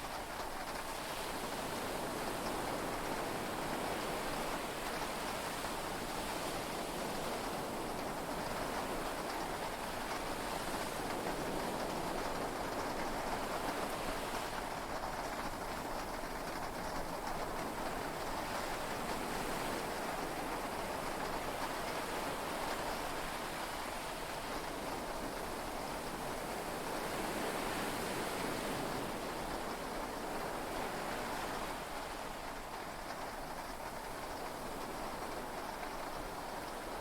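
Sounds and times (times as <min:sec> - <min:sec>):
heavy rain on cabin roof: 0:07.5 - 0:37.0.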